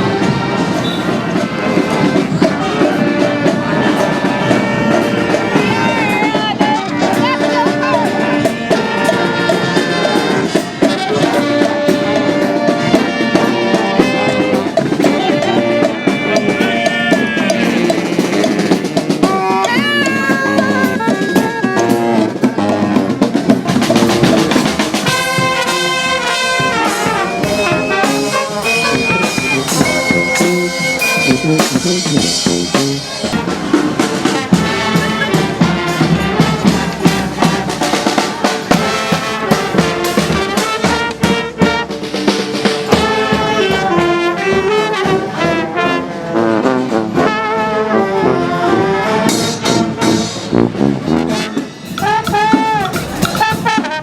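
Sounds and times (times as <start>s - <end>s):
snare drum: 0.0s - 45.7s, 49.3s - 54.0s
drum kit: 0.0s - 45.8s, 49.3s - 54.0s
trombones: 0.0s - 54.0s
trumpets: 0.0s - 54.0s
bass drum: 11.9s - 44.4s, 51.9s - 54.0s.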